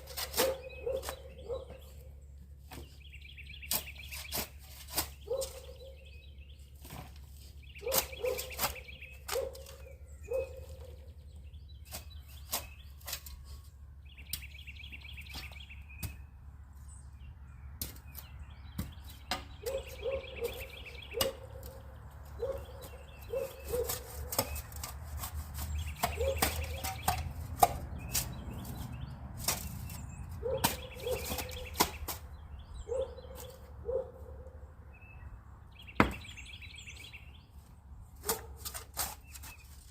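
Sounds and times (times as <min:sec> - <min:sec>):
hammer striking wood: 0:36.0 - 0:36.4.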